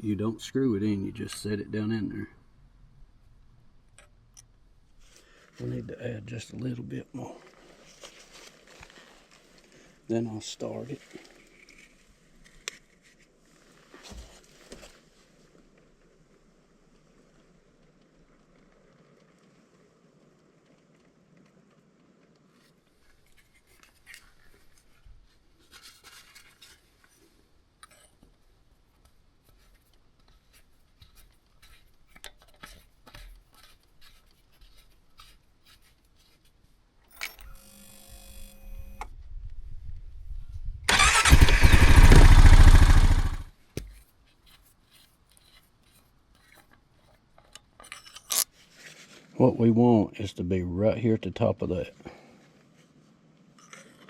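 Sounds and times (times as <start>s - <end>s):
faint clicks and handling noises: 10.6s - 37.6s, 43.7s - 49.3s
atv engine starting and running: 40.9s - 43.5s.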